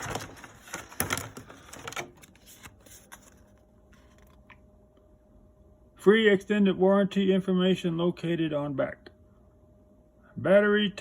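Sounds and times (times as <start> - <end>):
paper and plastic rustling: 0.0 - 4.6.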